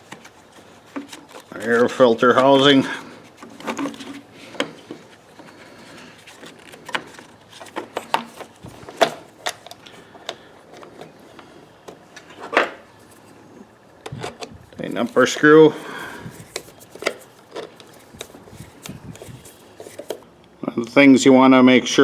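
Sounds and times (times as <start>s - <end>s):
plastic parts clicking and knocking: 6.4s - 11.1s, 16.3s - 20.2s.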